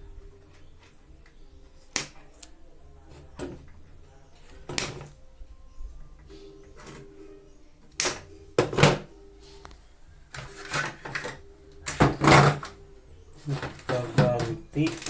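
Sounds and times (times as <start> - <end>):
wire cutters snipping: 7.9 - 9.0.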